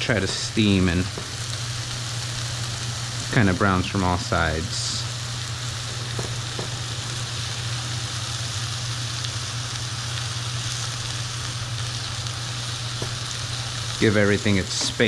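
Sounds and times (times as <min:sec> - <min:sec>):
chicken sizzling in frying pan: 0:00.0 - 0:15.0
steady low hum: 0:00.0 - 0:15.0
faint taps: 0:06.0 - 0:06.8, 0:13.0 - 0:13.2.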